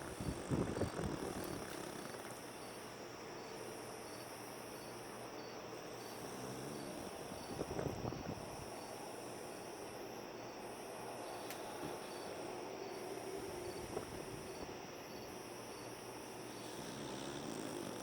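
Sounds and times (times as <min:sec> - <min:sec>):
dog snoring: 0:00.0 - 0:02.4, 0:06.0 - 0:07.3, 0:16.4 - 0:18.0.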